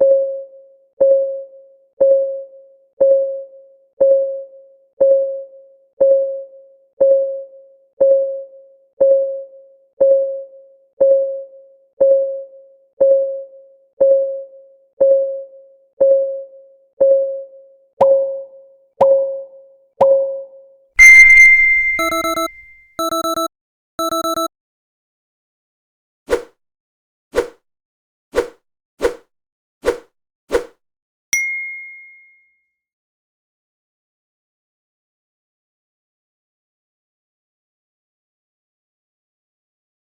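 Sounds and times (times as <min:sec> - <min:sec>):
timer ticking: 0:21.0 - 0:24.5.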